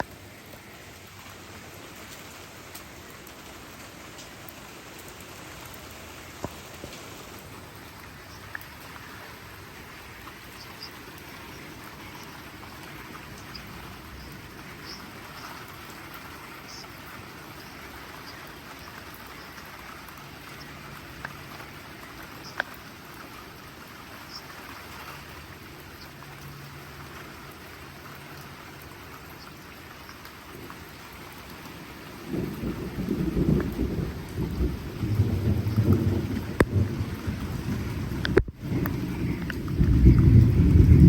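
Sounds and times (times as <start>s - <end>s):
heavy rain: 0.0s - 41.0s
drip ticks: 4.1s - 9.1s, 10.1s - 22.9s, 23.6s - 31.7s, 33.4s - 36.8s, 38.2s - 41.0s
rolling thunder: 32.3s - 41.0s.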